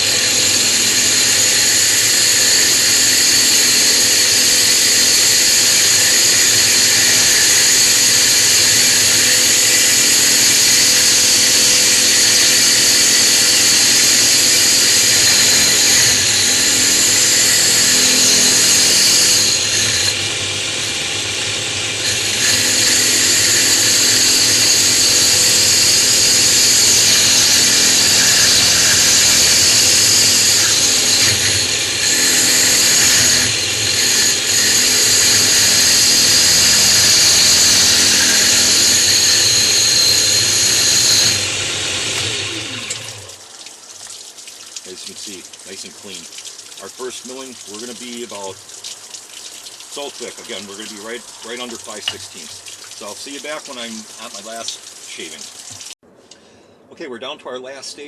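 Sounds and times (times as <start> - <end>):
drill press grinding stone: 0.0 - 43.4.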